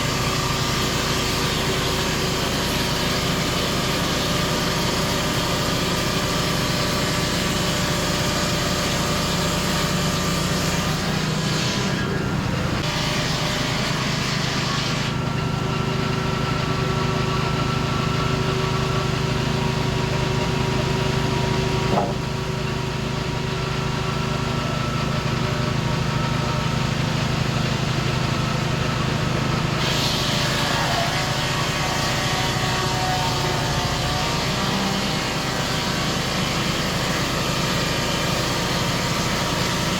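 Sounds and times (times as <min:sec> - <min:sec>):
sawmill engine running: 0:00.0 - 0:39.9
single knock: 0:21.9 - 0:22.3.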